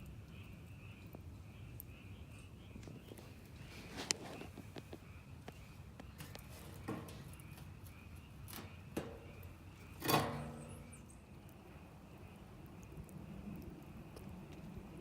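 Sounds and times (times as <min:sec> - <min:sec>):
fire popping: 0:00.0 - 0:15.0
wood fire crackling: 0:00.0 - 0:15.0.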